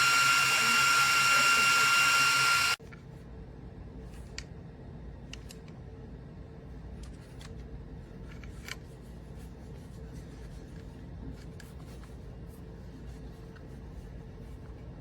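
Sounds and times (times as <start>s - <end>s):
small fan whirring: 0.0s - 3.2s
clicks and rustles of handling: 6.9s - 14.9s.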